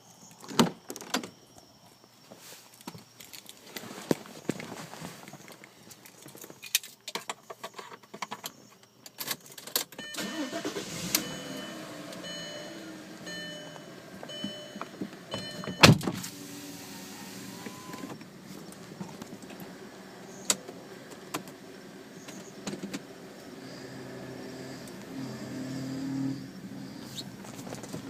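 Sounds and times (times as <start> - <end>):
high warning chime beeping: 10.0 - 16.0, 16.8 - 18.2
car engine running: 10.2 - 28.0.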